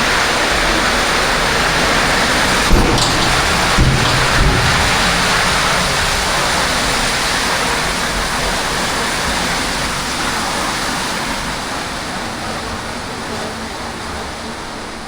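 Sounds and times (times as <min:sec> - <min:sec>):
heavy rain: 0:00.0 - 0:15.0.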